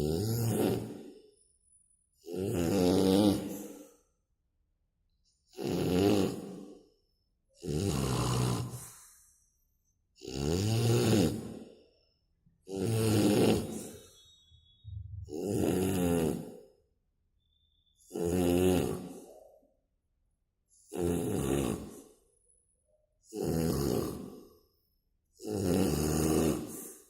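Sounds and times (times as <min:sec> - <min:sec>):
person snoring heavily: 0:00.0 - 0:01.1, 0:02.2 - 0:03.8, 0:05.6 - 0:06.8, 0:07.6 - 0:09.0, 0:10.2 - 0:11.6, 0:12.7 - 0:13.9, 0:15.2 - 0:16.7, 0:18.1 - 0:19.4, 0:20.9 - 0:22.0, 0:23.3 - 0:24.5, 0:25.4 - 0:27.0.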